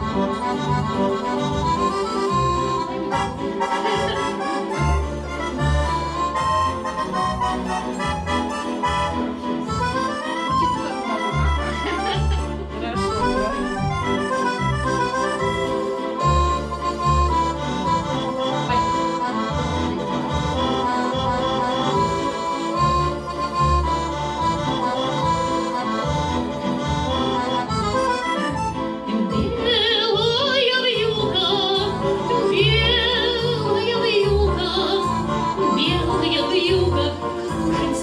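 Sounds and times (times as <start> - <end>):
accordion playing a waltz: 0.0 - 38.0
pulsing bass: 0.0 - 38.0.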